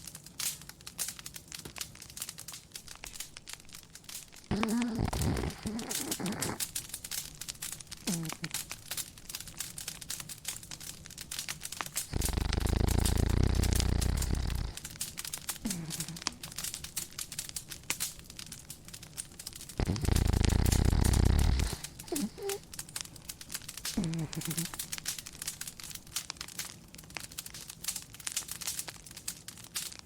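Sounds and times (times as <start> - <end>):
wood fire crackling: 0.0 - 30.0
dog snoring: 4.5 - 6.7, 8.1 - 8.6, 12.0 - 14.9, 19.8 - 22.6, 24.0 - 24.8.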